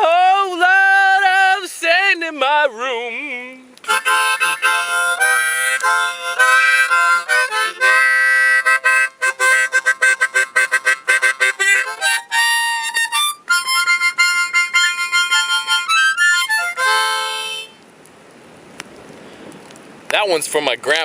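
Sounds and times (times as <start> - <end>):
harmonica playing: 3.8 - 17.8.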